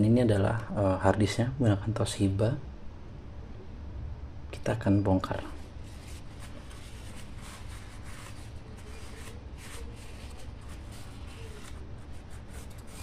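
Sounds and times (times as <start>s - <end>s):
low steady hum: 0.0s - 13.0s
rustling and scraping on laptop: 5.6s - 13.0s.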